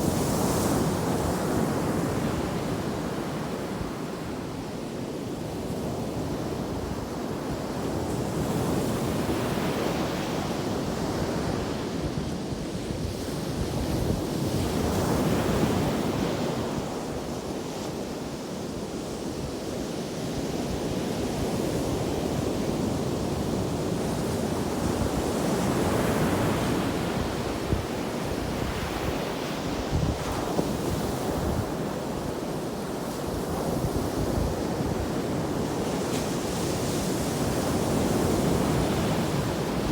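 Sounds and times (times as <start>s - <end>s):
ocean surf breaking on beach: 22.0s - 39.9s.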